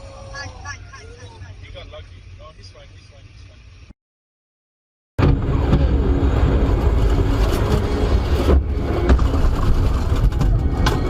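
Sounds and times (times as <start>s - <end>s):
motor vehicle rumbling: 5.2s - 11.0s.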